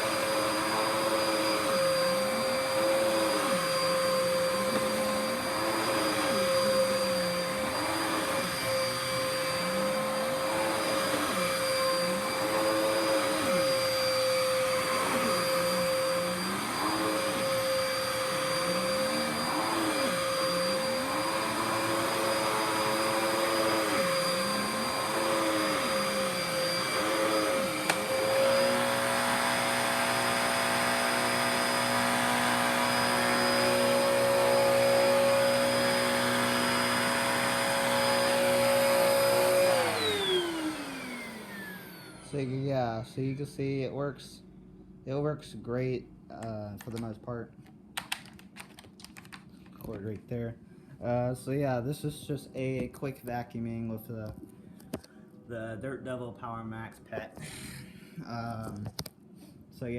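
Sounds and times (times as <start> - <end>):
upright vacuum cleaner running: 0.0 - 43.4.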